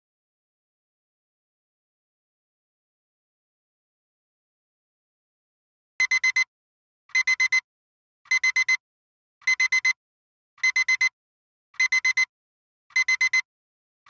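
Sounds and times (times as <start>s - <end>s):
digital alarm clock beeping: 6.0s - 6.5s, 7.1s - 7.6s, 8.3s - 8.8s, 9.4s - 10.0s, 10.6s - 11.2s, 11.8s - 12.3s, 12.9s - 13.5s.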